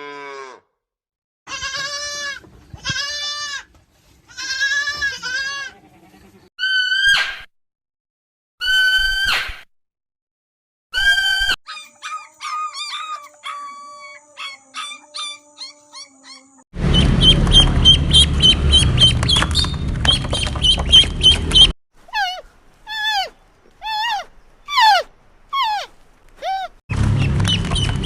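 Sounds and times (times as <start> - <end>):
bleat-like animal call: 1.5 - 3.7, 4.3 - 7.1
loud rough noise: 16.8 - 21.7, 26.9 - 28.0.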